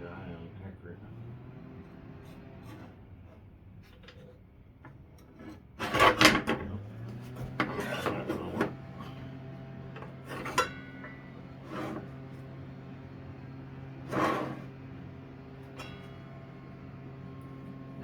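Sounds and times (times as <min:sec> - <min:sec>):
table saw parts scraping and clunking: 0:01.9 - 0:17.8
steady low hum: 0:07.6 - 0:18.0.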